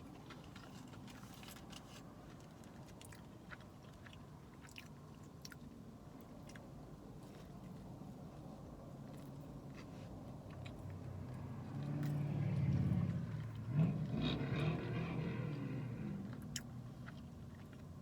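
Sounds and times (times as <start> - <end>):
faint chewing clicks: 0.0 - 12.2, 15.5 - 18.0
vehicle engine humming: 8.4 - 18.0.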